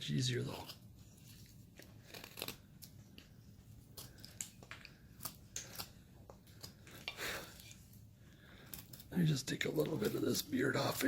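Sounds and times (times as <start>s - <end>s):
knife cutting wood: 3.7s - 9.2s.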